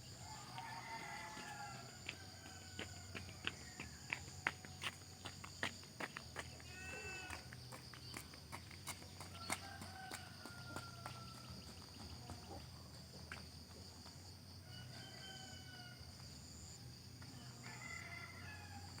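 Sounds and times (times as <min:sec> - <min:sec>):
crickets chirring: 0:00.0 - 0:19.0
faint rooster crows: 0:00.1 - 0:04.4, 0:09.3 - 0:12.5, 0:14.6 - 0:16.3, 0:17.4 - 0:19.0.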